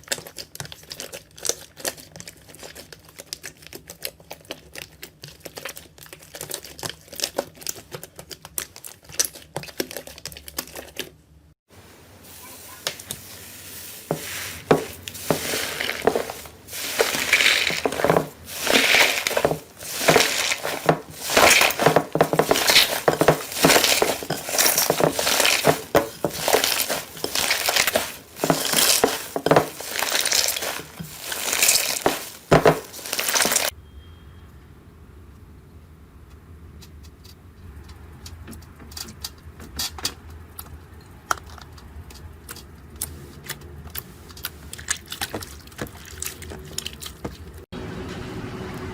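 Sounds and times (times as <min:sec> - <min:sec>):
slime crackling: 0:12.8 - 0:33.7.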